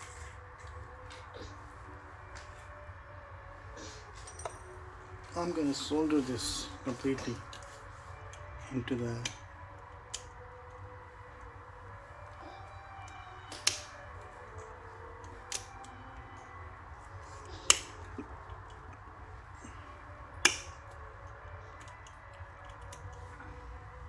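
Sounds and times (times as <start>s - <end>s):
sharp clicks of small tools: 20.4s - 20.7s.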